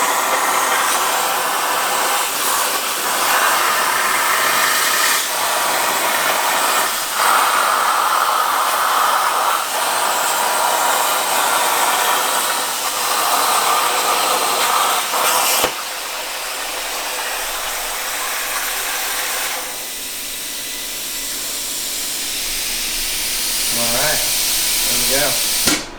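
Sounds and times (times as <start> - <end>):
plasma arc hissing: 0.0 - 25.9
steady air hiss: 0.0 - 25.9
plasma cutter click: 23.6 - 25.9.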